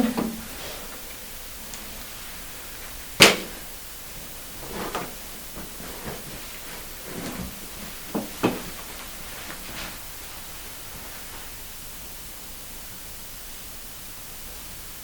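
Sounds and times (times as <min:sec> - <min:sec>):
person shuffling: 0:00.0 - 0:11.7.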